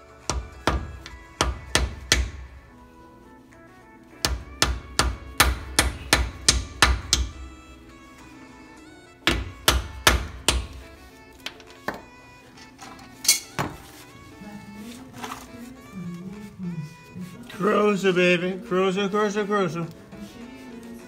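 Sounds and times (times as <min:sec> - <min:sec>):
background music with melody: 0:00.0 - 0:21.0
sharp knocks: 0:04.2 - 0:07.5, 0:09.2 - 0:10.9.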